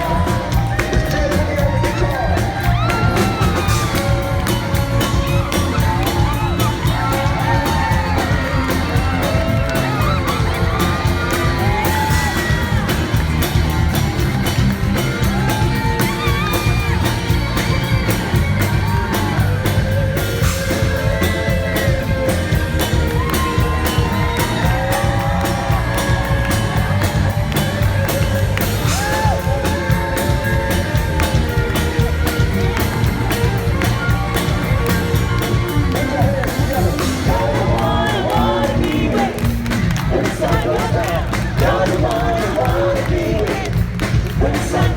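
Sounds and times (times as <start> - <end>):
person singing: 0.0 - 13.2, 33.8 - 44.9
crowd whooping and cheering: 0.0 - 44.9
live band playing: 0.0 - 44.9.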